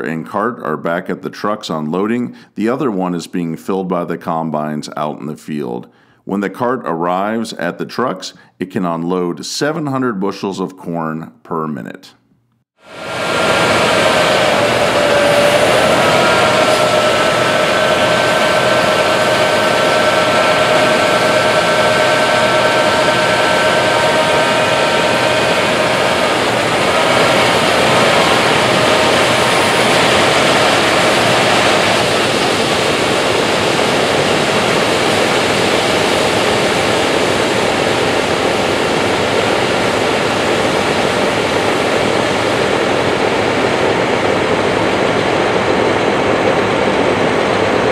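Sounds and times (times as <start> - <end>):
steady multi-tone whine: 12.8 - 47.9
harvest machinery rushing: 12.9 - 47.8.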